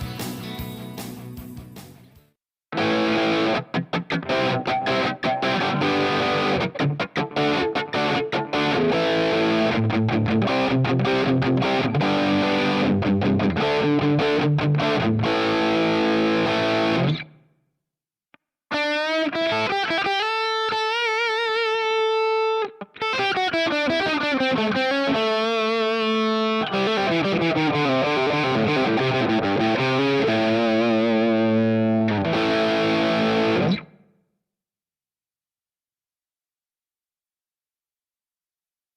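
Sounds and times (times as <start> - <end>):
distorted electric guitar: 0.0 - 17.4, 18.7 - 34.0.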